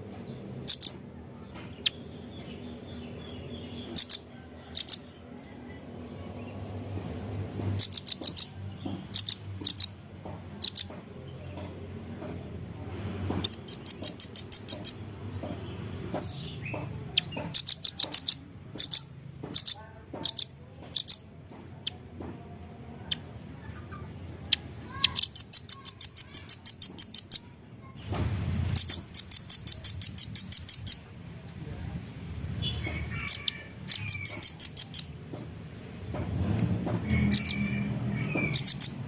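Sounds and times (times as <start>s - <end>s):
nuthatch calling: 0.6s - 1.0s, 3.5s - 6.2s, 6.8s - 10.0s, 10.6s - 11.0s, 13.4s - 15.6s, 16.2s - 22.0s, 23.1s - 27.5s, 28.7s - 31.1s, 31.8s - 35.2s, 36.9s - 39.0s.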